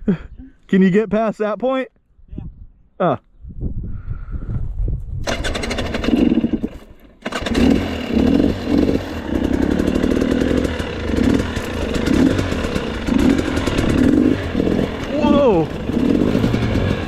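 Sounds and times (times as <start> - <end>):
dirt bike engine running: 5.3 - 17.0.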